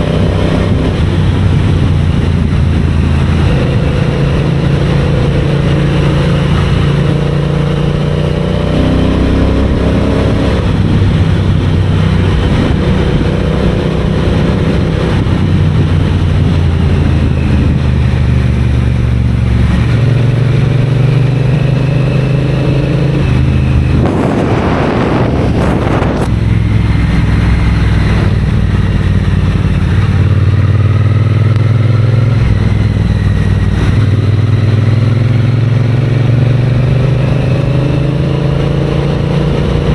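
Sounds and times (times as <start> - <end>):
motorcycle engine and exhaust: 0.0 - 39.9
rush of noise: 18.9 - 31.2.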